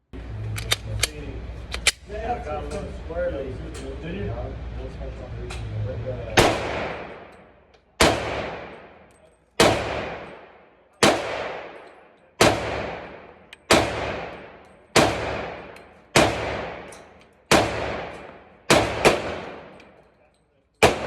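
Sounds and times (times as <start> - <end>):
pistol shots with echo: 6.4 - 20.0, 20.8 - 21.0.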